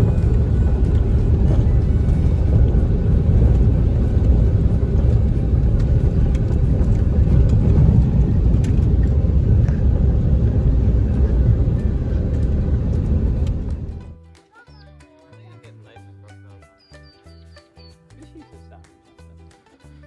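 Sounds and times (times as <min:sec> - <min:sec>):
vehicle road rumble: 0:00.0 - 0:14.2.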